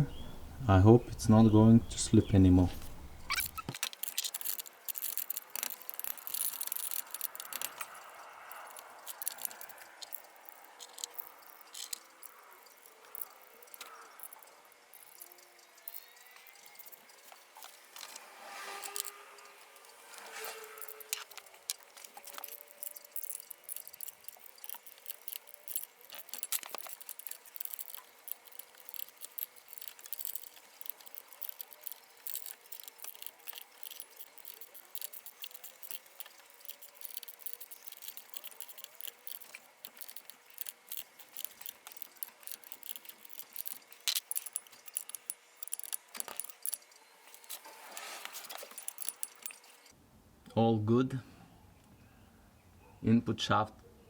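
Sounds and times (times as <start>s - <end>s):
metal parts clinking: 3.2s - 18.2s, 19.8s - 49.9s.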